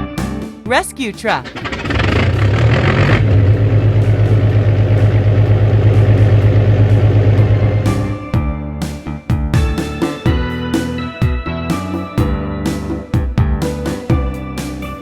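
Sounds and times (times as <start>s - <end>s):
truck engine idling: 1.4s - 8.4s.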